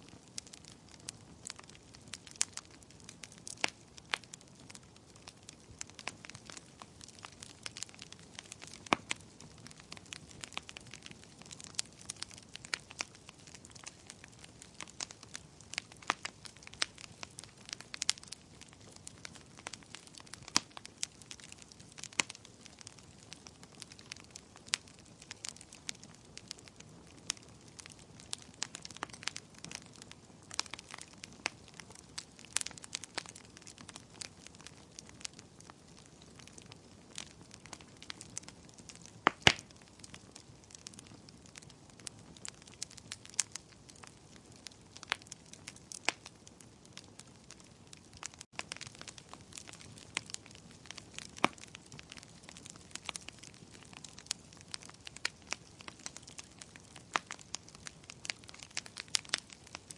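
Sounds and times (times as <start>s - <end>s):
soft steady hiss: 0.0s - 47.4s
wood fire crackling: 0.0s - 59.9s.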